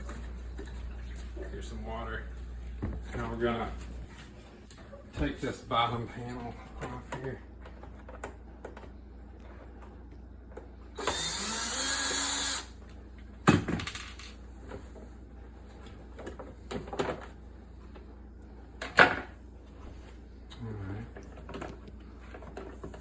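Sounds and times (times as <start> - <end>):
power drill motor winding up: 11.0 - 12.8.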